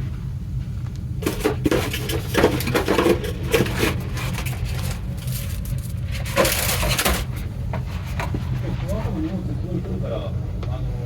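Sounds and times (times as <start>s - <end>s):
steady low hum: 0.0s - 11.0s
packaging rustling: 1.2s - 8.3s.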